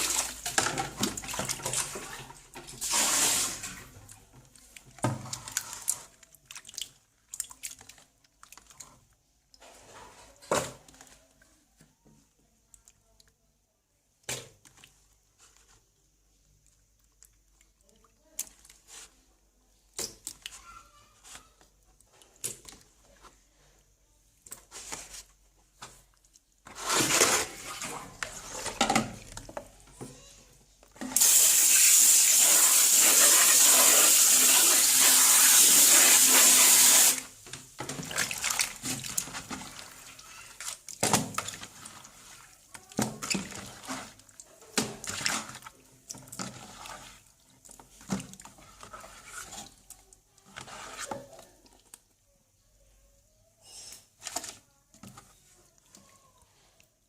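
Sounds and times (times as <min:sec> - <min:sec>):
water splashing: 0:00.0 - 0:09.0, 0:31.2 - 0:49.8.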